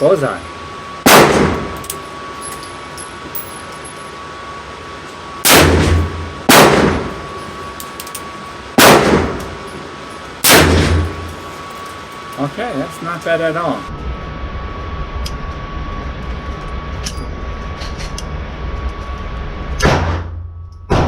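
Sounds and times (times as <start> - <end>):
loud gunshots: 1.0 - 1.8, 5.4 - 7.2, 8.8 - 9.4, 10.4 - 11.2, 19.8 - 21.0.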